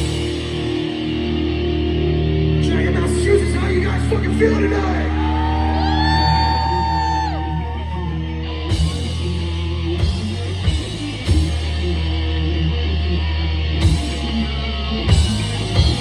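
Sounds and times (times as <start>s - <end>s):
bass guitar: 0.0s - 16.0s
distorted electric guitar: 0.0s - 16.0s
drum hits: 15.1s - 16.0s.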